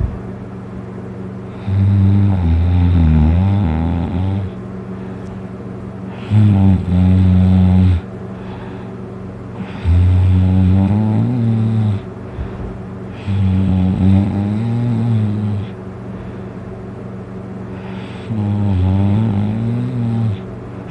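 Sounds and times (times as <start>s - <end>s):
steady low hum: 0.0s - 20.9s
person snoring loudly: 1.5s - 4.6s, 6.1s - 8.1s, 9.6s - 12.1s, 13.1s - 15.8s, 17.8s - 20.9s.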